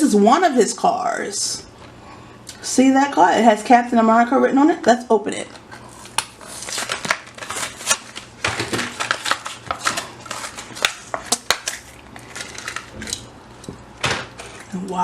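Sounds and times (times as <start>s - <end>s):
plastic packaging crinkling: 5.5s - 13.2s.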